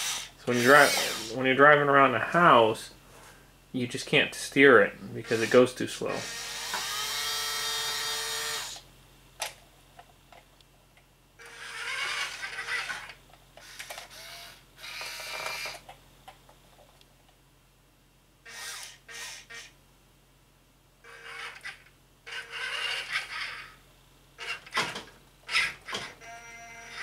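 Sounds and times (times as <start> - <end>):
small electric motors whirring: 0.0 - 1.4, 5.2 - 8.8, 11.4 - 15.8, 18.4 - 19.7, 21.0 - 23.8, 25.5 - 27.0.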